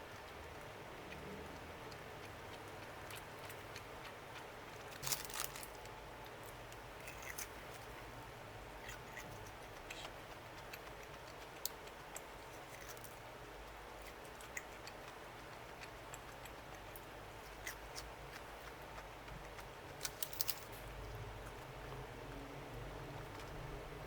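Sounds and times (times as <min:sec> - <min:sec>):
soft clicks and taps of eating: 0:08.8 - 0:20.4, 0:21.0 - 0:23.7.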